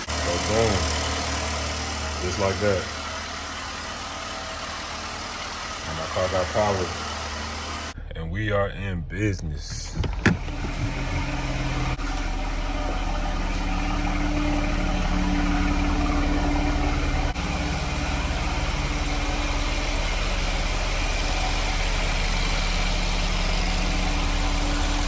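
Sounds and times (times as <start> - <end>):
car engine idling: 0.0 - 8.2, 9.2 - 25.0.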